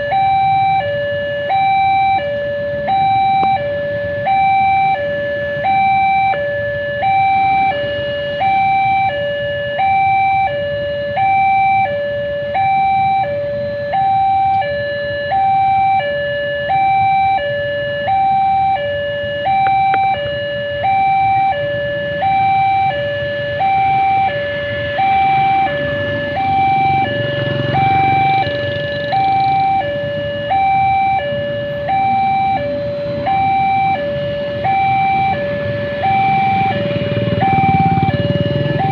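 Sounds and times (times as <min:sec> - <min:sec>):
two-tone warning siren: 0:00.0 - 0:38.9.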